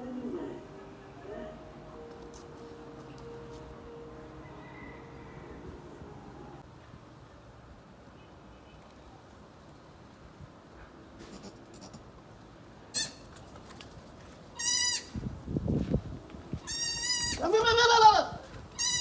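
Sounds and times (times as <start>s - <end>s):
goats bleating: 16.7s - 19.0s.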